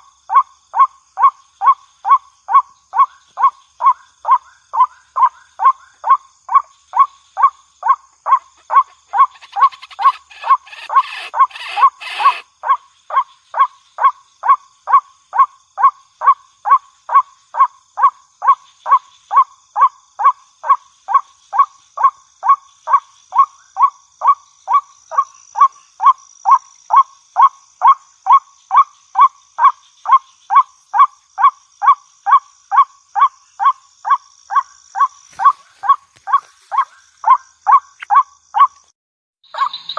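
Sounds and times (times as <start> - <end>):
bird croaking calls: 8.2 - 12.8, 34.5 - 39.9.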